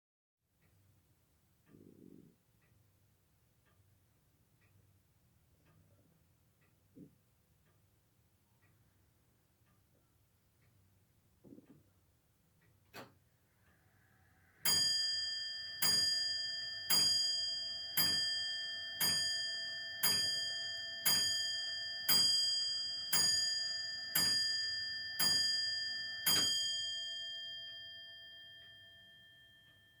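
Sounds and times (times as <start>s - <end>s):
grandfather clock striking: 14.7s - 27.5s.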